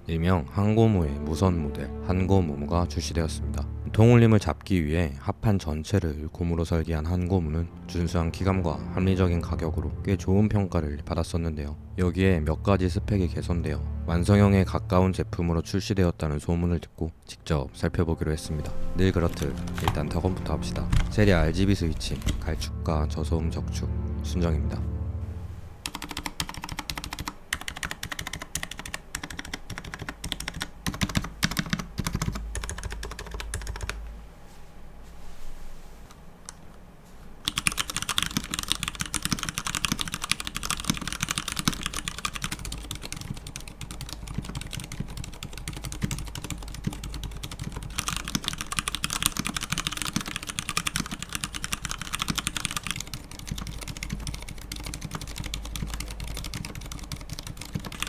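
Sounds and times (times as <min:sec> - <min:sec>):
mechanical keyboard typing: 0:18.5 - 0:22.7, 0:25.8 - 0:34.0, 0:37.4 - 0:58.0.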